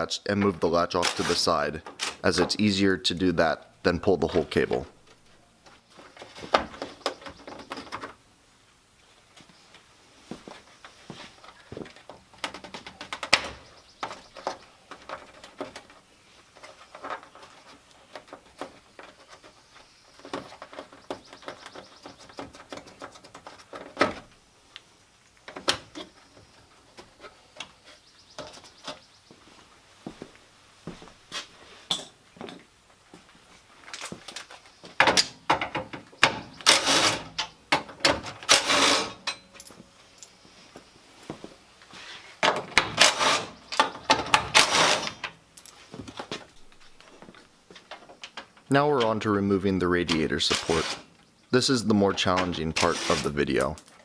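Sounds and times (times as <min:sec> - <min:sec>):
tools and metal parts clattering: 0:33.8 - 0:40.4, 0:42.4 - 0:48.7.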